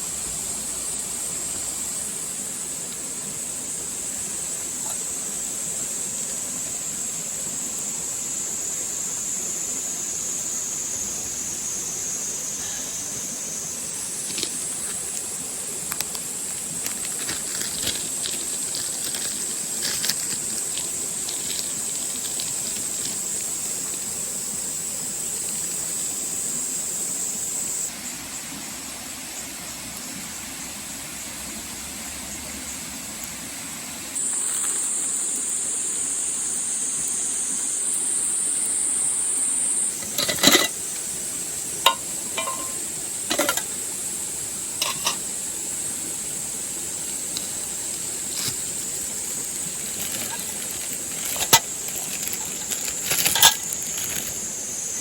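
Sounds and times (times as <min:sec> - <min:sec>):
cicadas droning: 0:00.0 - 0:55.0
faint crackles: 0:14.0 - 0:24.6, 0:46.8 - 0:54.6.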